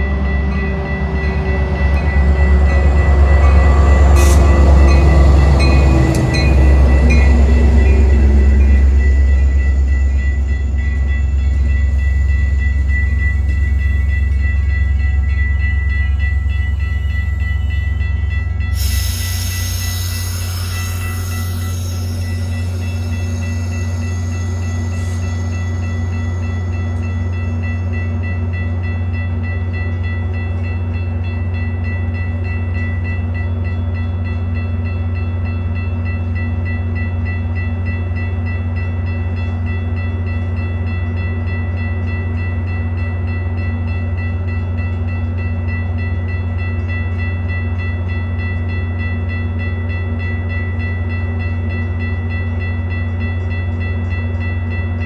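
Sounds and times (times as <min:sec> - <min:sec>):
diesel train engine hum: 0:00.0 - 0:55.0
thin high whine: 0:18.7 - 0:27.8.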